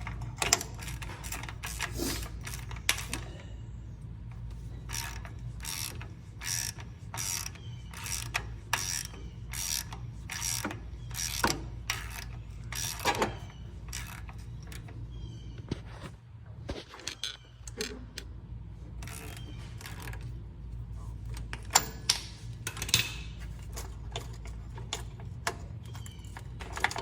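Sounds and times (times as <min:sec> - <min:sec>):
ratchet wrench clicking: 0:00.0 - 0:03.2, 0:04.8 - 0:14.9, 0:19.0 - 0:20.3.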